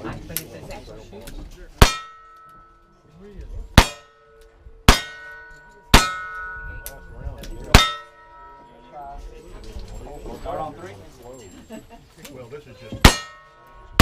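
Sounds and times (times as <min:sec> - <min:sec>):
steel target ringing: 0:01.8 - 0:02.9, 0:03.8 - 0:07.1, 0:07.7 - 0:09.0, 0:13.0 - 0:14.0.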